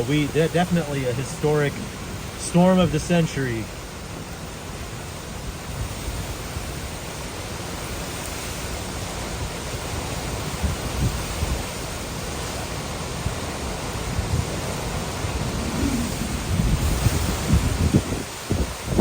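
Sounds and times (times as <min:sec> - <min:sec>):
wind gusts buffeting microphone: 0:00.0 - 0:03.1, 0:10.4 - 0:11.9, 0:13.2 - 0:19.0
wind and rain rushing: 0:00.0 - 0:19.0.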